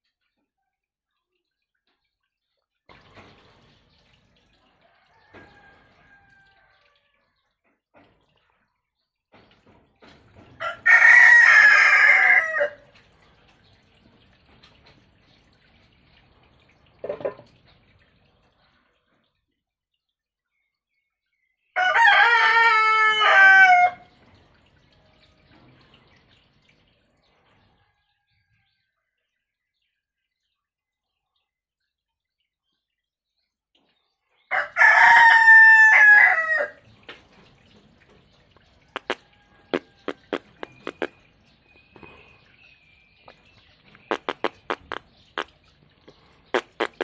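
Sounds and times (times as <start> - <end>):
rooster crowing: 4.9 - 7.1, 10.6 - 12.8, 21.8 - 24.1, 34.5 - 36.8
sharp clicks: 44.1 - 45.0.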